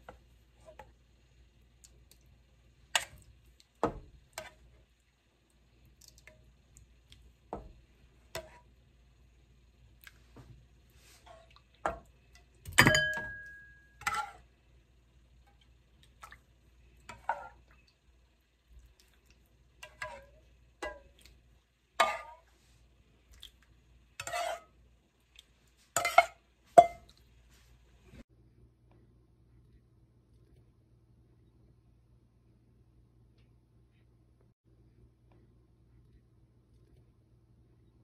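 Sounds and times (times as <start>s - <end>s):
dishes and utensils clinking: 12.7s - 14.4s, 26.0s - 27.2s.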